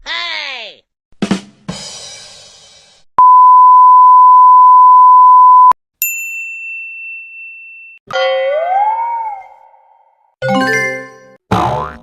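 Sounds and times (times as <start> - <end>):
censor bleep: 3.2 - 5.8.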